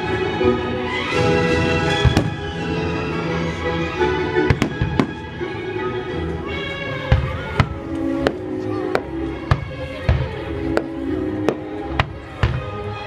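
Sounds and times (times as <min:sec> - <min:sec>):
orchestral music: 0:00.0 - 0:13.0
fireworks bangs: 0:02.0 - 0:02.6, 0:04.5 - 0:05.3.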